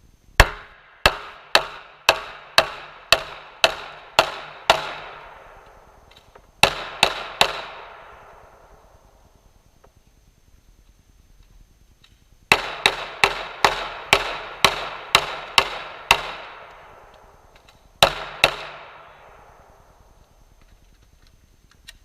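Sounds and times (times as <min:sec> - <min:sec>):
pistol shots with echo: 0:00.4 - 0:09.0, 0:12.5 - 0:20.0.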